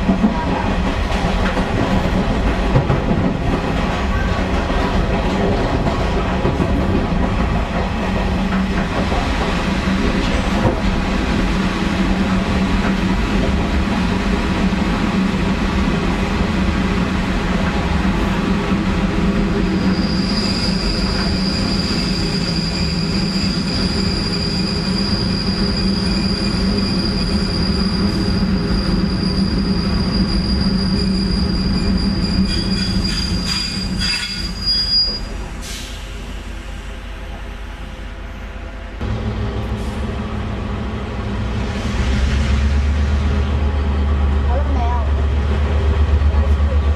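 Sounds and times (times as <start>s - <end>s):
train running: 0.0s - 46.9s
wheels squealing on rails: 19.3s - 37.1s
wheels rumbling: 39.0s - 46.9s.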